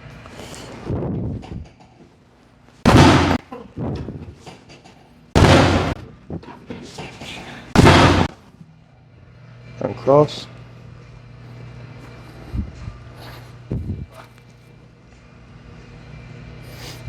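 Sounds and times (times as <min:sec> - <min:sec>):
thuds on treatment table: 0:02.9 - 0:03.4, 0:05.4 - 0:06.0, 0:07.8 - 0:08.3.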